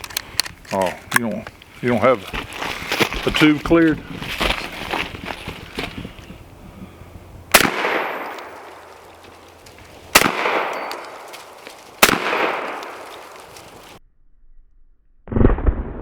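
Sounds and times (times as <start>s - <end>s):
shotgun shots echoing: 7.5s - 14.0s.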